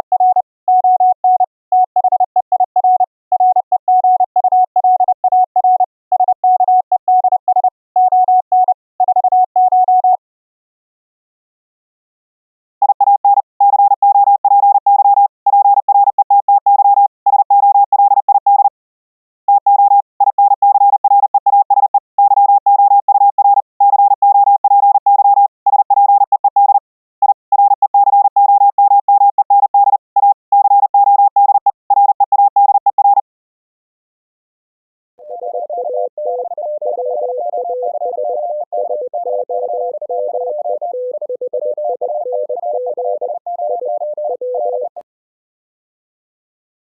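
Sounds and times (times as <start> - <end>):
morse code beeps: 0.0 - 10.2, 12.8 - 18.7, 19.5 - 33.2, 35.2 - 45.0.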